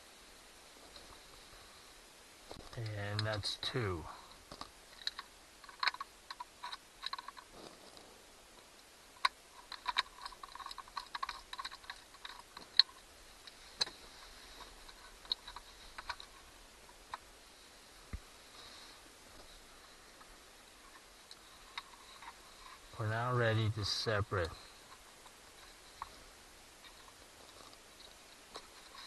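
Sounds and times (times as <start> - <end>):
small clicks and taps of screws: 4.5 - 7.5, 8.6 - 14.0, 14.6 - 16.4.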